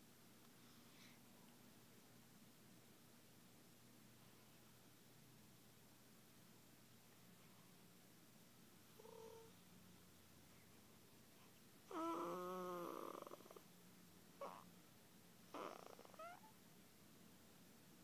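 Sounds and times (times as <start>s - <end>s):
baby snoring: 11.9s - 13.6s, 14.4s - 14.7s, 15.5s - 16.5s.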